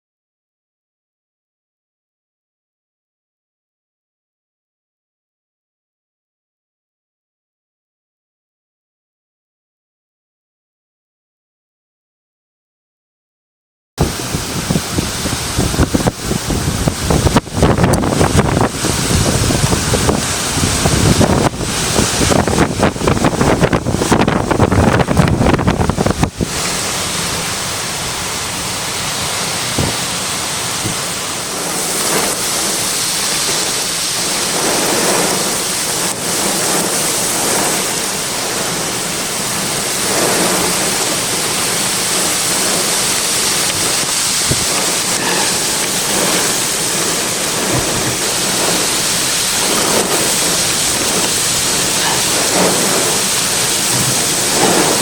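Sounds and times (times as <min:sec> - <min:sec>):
gusty wind: 0:14.0 - 0:55.0
heavy rain hiss: 0:14.0 - 0:55.0
wind buffeting microphone: 0:14.0 - 0:55.0.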